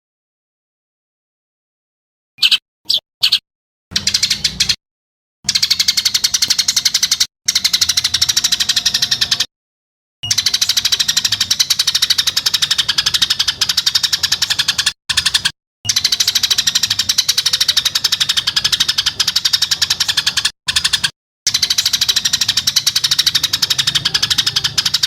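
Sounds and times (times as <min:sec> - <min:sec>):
songbird rattling call: 0:10.2 - 0:25.0.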